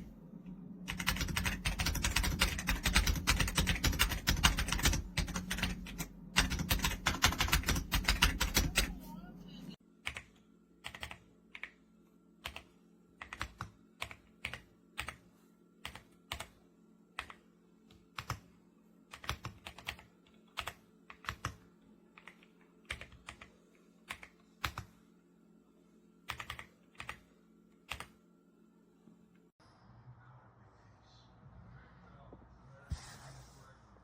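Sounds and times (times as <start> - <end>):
mechanical keyboard typing: 0.9 - 9.0, 10.0 - 11.8, 12.4 - 15.2, 15.8 - 16.5, 17.1 - 18.4, 19.1 - 21.6, 22.2 - 24.9, 26.3 - 27.2, 27.8 - 28.2.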